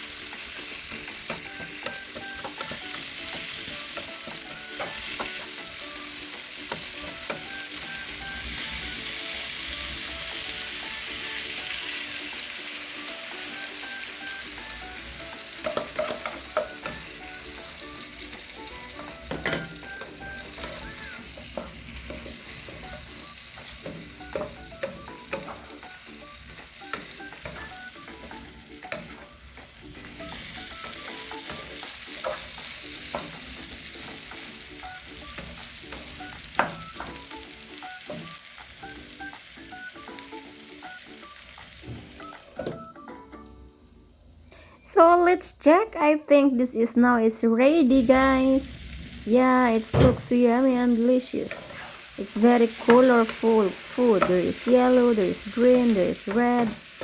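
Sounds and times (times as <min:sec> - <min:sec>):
food sizzling in a frying pan: 0:00.0 - 0:44.7, 0:46.9 - 0:57.0
utensil knocking against pan: 0:01.2 - 0:05.6, 0:15.6 - 0:17.1, 0:19.2 - 0:25.9, 0:35.2 - 0:37.3.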